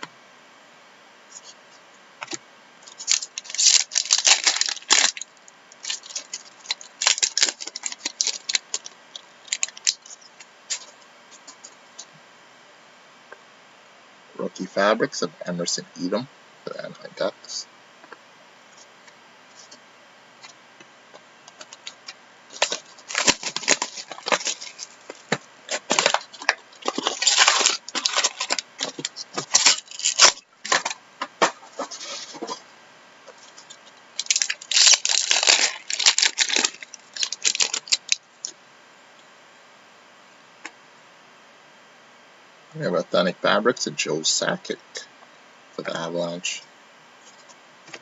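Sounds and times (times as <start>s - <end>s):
card pack wrappers tearing: 2.2s - 10.9s, 21.5s - 31.0s, 33.5s - 38.2s.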